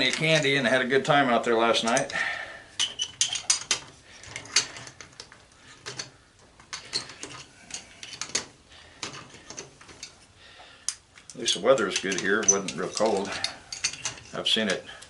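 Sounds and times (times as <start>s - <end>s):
metallic clicks of hand tools: 10.8s - 14.8s.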